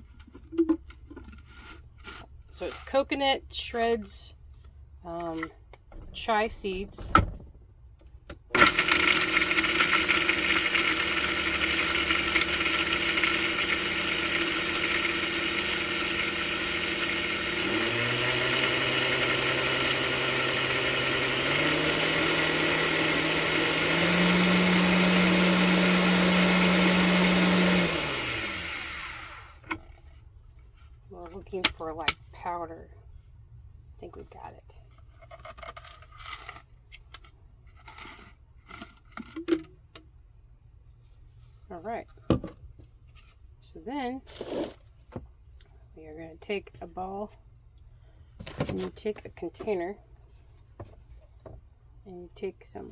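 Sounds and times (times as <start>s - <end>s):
electric blender grinding: 8.6s - 29.7s.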